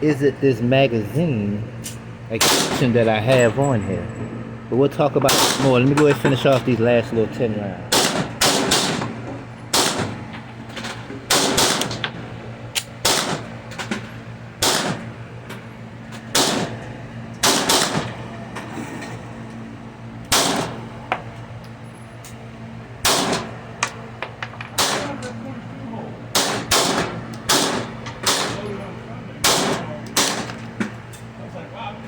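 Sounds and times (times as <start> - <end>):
steady low hum: 0.0 - 32.0
pistol shots: 7.9 - 9.1, 9.7 - 10.2, 11.3 - 12.0, 13.0 - 13.5, 14.6 - 15.0, 16.4 - 16.8, 17.4 - 18.2, 20.3 - 20.8, 23.1 - 23.5, 24.8 - 25.1, 26.4 - 28.6, 29.4 - 30.6.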